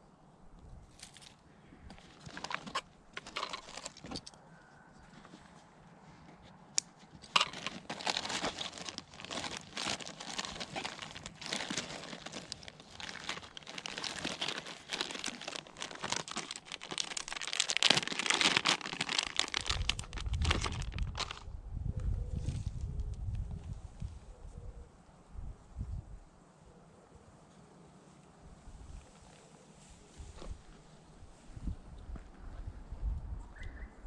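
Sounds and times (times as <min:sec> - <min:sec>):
crinkling and rustling: 0:00.8 - 0:21.5.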